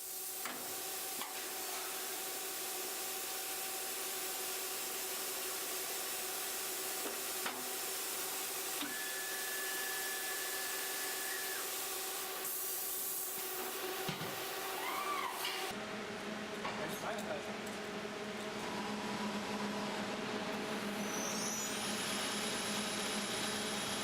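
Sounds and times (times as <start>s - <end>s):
cutting machine hiss and hum: 7.5s - 15.8s.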